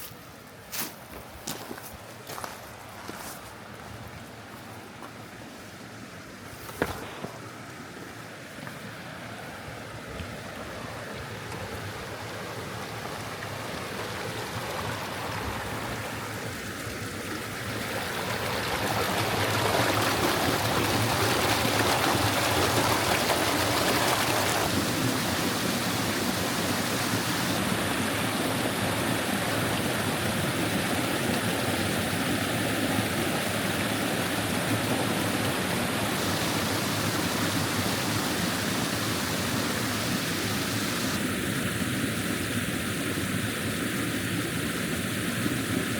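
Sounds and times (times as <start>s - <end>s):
waterfall rushing: 7.1s - 42.5s.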